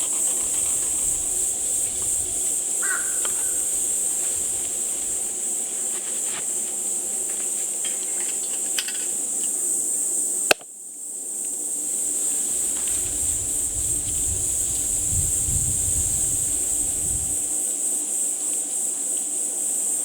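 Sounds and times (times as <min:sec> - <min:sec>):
insects trilling: 0:00.0 - 0:20.0.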